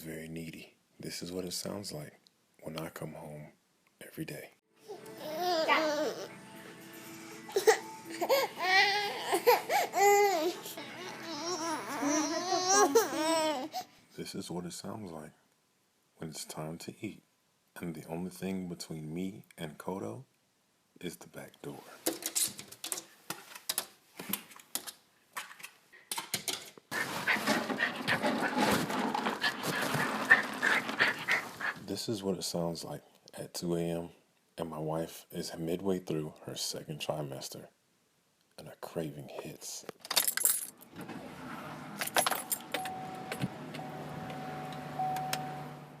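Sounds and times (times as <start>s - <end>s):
dog claws scratching at door: 27.0s - 31.8s
keys jangling: 40.0s - 40.8s, 42.0s - 42.9s
high warning tone: 42.7s - 45.9s.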